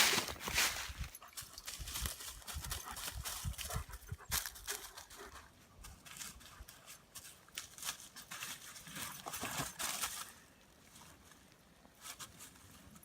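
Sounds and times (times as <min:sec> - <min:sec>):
rustling and scraping: 0:00.0 - 0:02.6.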